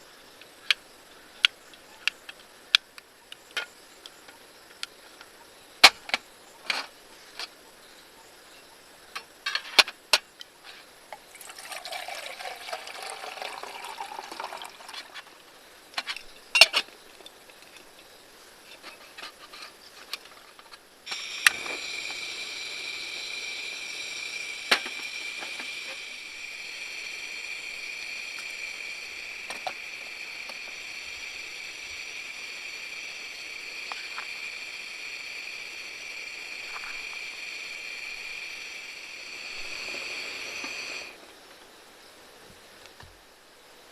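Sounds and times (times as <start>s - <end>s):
liquid pouring: 11.1s - 15.6s.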